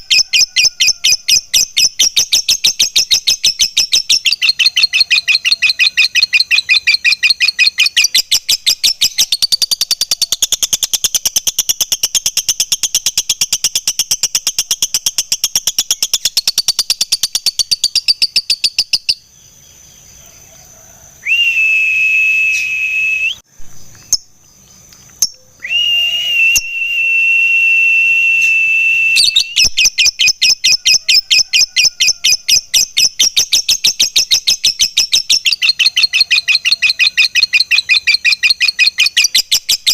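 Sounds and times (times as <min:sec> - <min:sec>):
lovebird chattering call: 0:00.0 - 0:19.3, 0:29.2 - 0:39.9
whistle-like bird tones: 0:21.2 - 0:23.4, 0:25.3 - 0:39.9.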